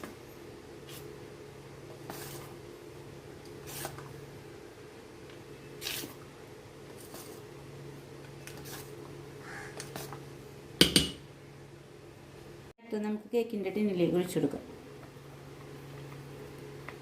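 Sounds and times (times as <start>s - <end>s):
spoon stirring thick batter: 1.8s - 2.6s.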